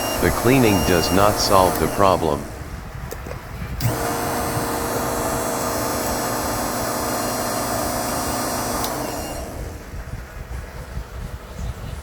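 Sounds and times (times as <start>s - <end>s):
treadmill motor humming: 0.0s - 2.0s, 3.8s - 9.8s.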